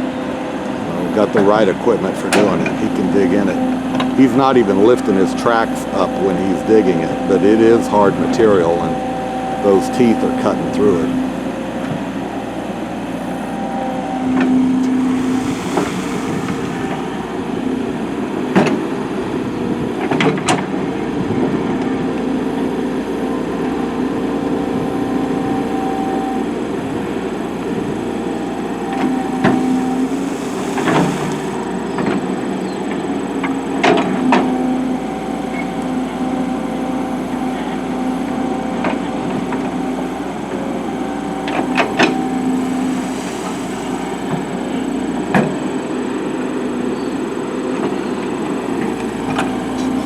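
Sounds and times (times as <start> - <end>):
excavator diesel engine: 14.4 - 19.8, 25.0 - 33.6, 34.6 - 46.8, 48.2 - 50.0
bucket digging rock: 29.0 - 31.9.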